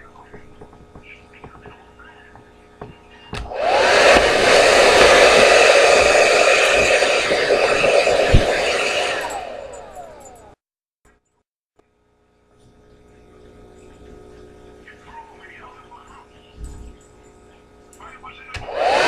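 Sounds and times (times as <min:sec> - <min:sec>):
hair dryer blowing: 0:03.4 - 0:10.6, 0:18.6 - 0:19.0.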